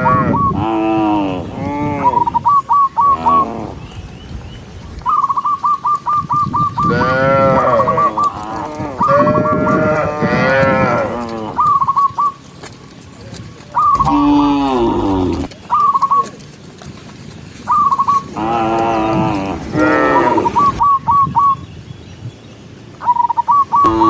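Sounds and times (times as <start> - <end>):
cattle mooing: 0.0 - 2.4, 6.8 - 11.7, 14.0 - 15.5, 18.4 - 20.8
short high repeated calls: 13.8 - 16.2.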